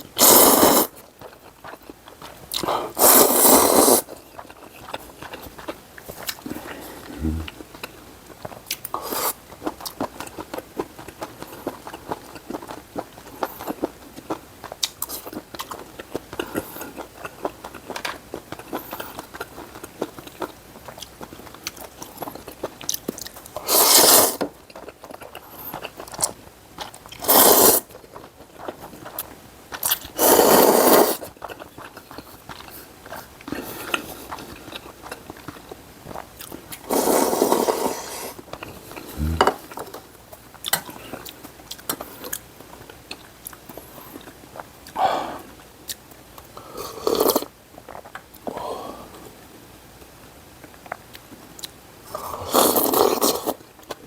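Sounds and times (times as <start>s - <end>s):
slurping noodles: 0.2s - 1.0s, 2.6s - 4.2s, 23.6s - 24.5s, 27.2s - 27.9s, 29.9s - 31.3s, 36.8s - 38.4s, 39.0s - 39.7s, 46.7s - 47.5s, 52.1s - 53.6s
wet chewing: 0.2s - 48.6s.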